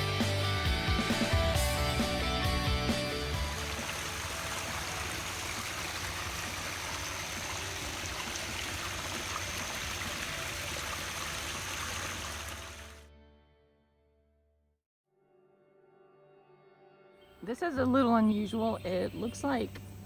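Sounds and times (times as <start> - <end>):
river water running over rocks: 3.4 - 13.0.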